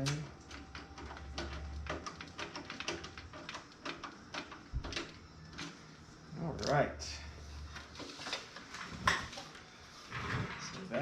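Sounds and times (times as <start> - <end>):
small hard parts clicking: 0.0 - 5.9.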